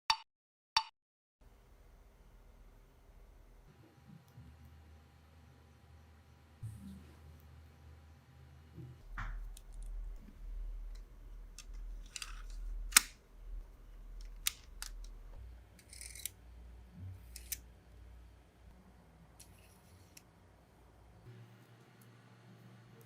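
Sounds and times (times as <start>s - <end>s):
plastic parts scraping: 11.6s - 13.2s
plastic parts snapping together: 11.6s - 13.2s.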